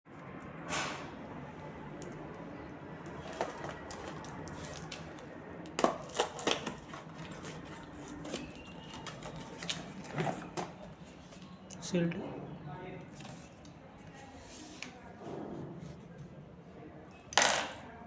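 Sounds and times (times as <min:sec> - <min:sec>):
cardboard and plastic wrap crackling: 0:03.1 - 0:11.4.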